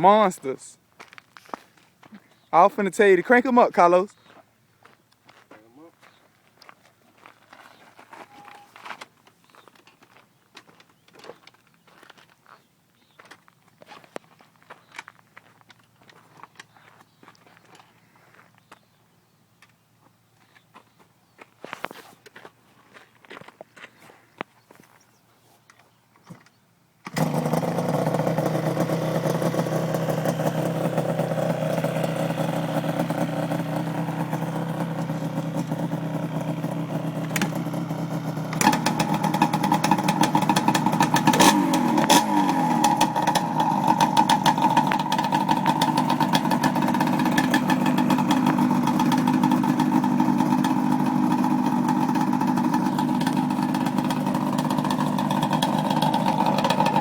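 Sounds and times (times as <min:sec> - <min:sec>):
atv engine idling: 0:27.1 - 0:57.0.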